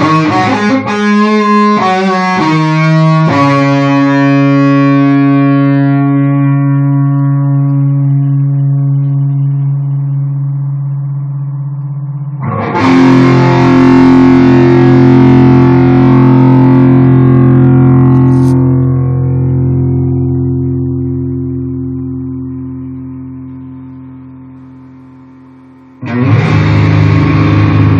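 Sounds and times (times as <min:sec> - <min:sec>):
distorted guitar chords: 0:00.0 - 0:27.9.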